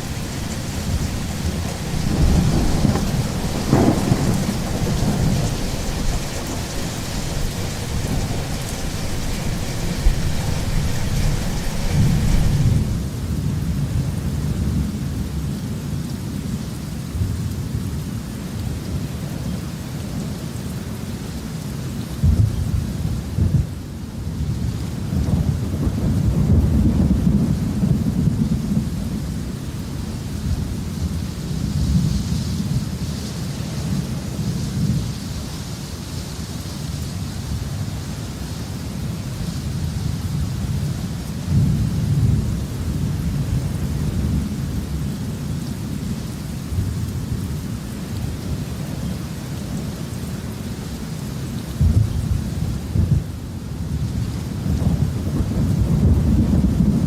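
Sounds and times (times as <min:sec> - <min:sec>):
sharp thunder crack: 0:00.0 - 0:13.0
rolling thunder: 0:00.0 - 0:14.9, 0:25.1 - 0:29.6, 0:40.0 - 0:45.1, 0:51.8 - 0:53.4, 0:54.2 - 0:57.0
steady rain hiss: 0:00.0 - 0:57.0.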